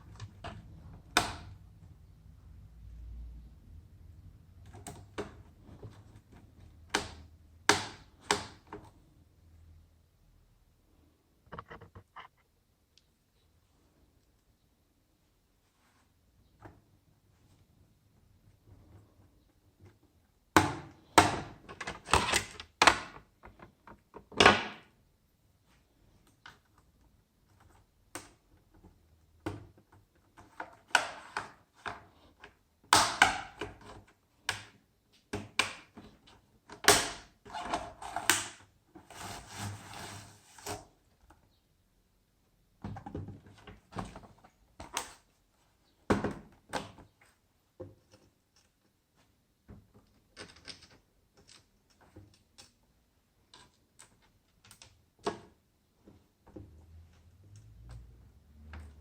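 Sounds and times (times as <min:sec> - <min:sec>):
laptop parts clicking and knocking: 0:11.4 - 0:12.4.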